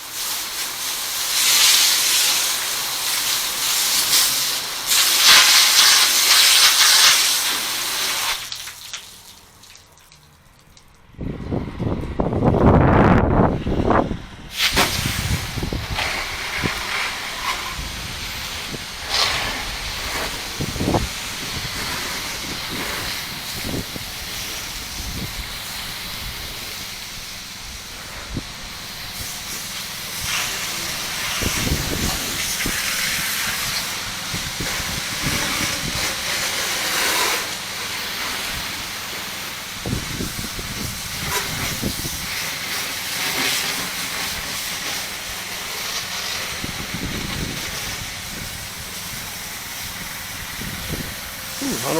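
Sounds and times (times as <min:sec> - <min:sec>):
pressure washer spray hissing: 0:00.0 - 0:09.8, 0:14.5 - 0:51.9
wind rumbling on microphone: 0:11.1 - 0:36.2, 0:39.8 - 0:42.4, 0:46.1 - 0:51.9.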